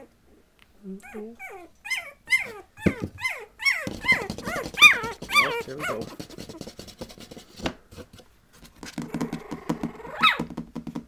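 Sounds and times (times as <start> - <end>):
puppy grunts: 1.0 - 6.6
puppy squeak: 1.0 - 6.6, 9.2 - 10.4
puppies scratching and shuffling: 1.1 - 11.0.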